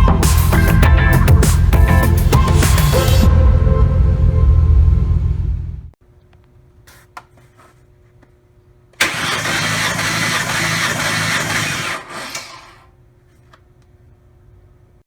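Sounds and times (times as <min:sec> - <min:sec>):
car engine starting and running: 0:00.0 - 0:06.0, 0:09.0 - 0:12.9.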